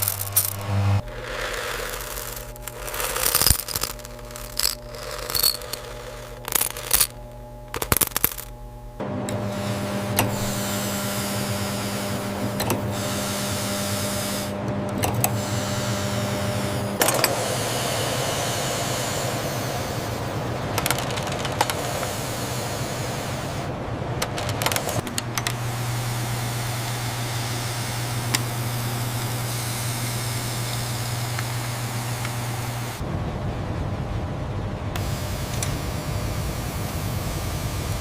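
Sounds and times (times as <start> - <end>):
machinery clicking and rattling: 0.0 - 33.0
machinery humming: 0.0 - 38.0.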